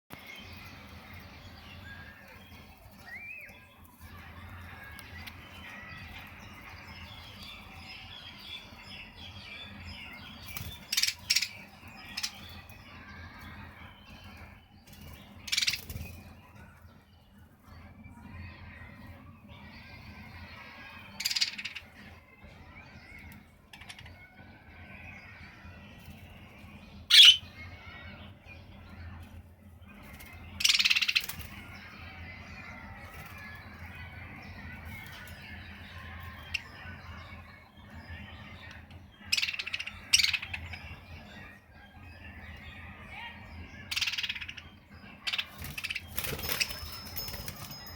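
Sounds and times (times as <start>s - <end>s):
sharp bird calls: 27.0s - 28.8s, 30.0s - 47.9s
budgerigars warbling: 27.1s - 28.0s, 30.5s - 47.0s.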